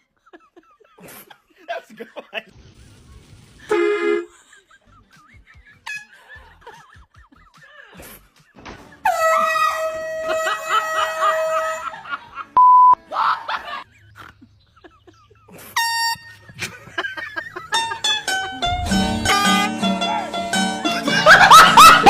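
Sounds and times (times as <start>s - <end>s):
loud horn blast: 3.7s - 4.3s, 9.0s - 12.0s
bleep censor tone: 12.6s - 13.0s.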